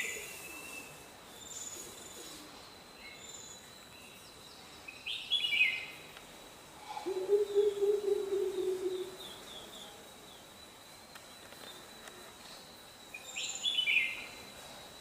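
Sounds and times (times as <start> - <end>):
thin steady high tone: 0.0 - 15.0
bulbuls chirping: 7.0 - 9.7.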